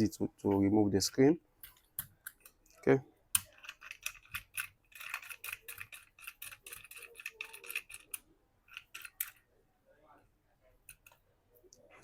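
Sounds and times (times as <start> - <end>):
small tools clicking: 1.6 - 9.4.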